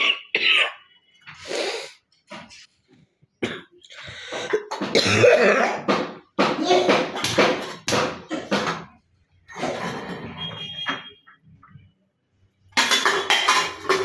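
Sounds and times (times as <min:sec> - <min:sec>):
woman coughing: 0:00.0 - 0:00.9, 0:03.4 - 0:03.8, 0:04.4 - 0:05.9.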